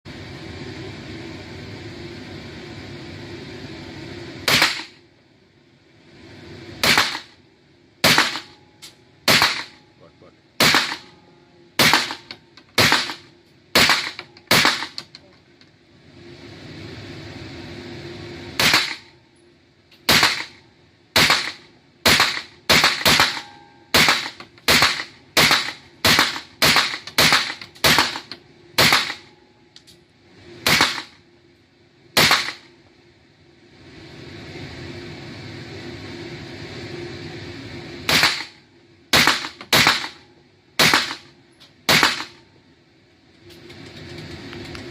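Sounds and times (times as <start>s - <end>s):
steady low hum: 0.1s - 44.9s
pistol shots: 6.8s - 7.3s, 8.0s - 8.5s, 9.3s - 9.8s, 10.6s - 11.1s, 11.8s - 13.2s, 13.8s - 15.0s, 20.1s - 20.5s, 21.2s - 28.2s, 28.8s - 29.2s, 30.6s - 31.1s, 32.2s - 32.6s, 38.1s - 38.5s, 39.1s - 40.2s, 40.8s - 41.2s, 41.9s - 42.4s.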